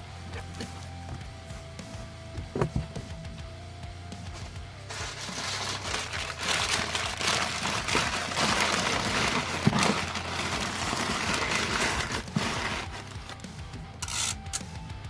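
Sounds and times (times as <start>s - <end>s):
packing material crinkling: 4.4s - 13.2s.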